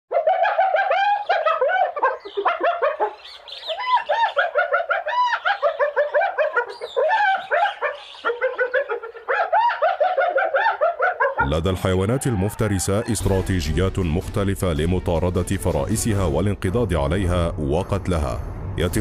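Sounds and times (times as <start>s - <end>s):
animals yelping: 0.1s - 13.2s.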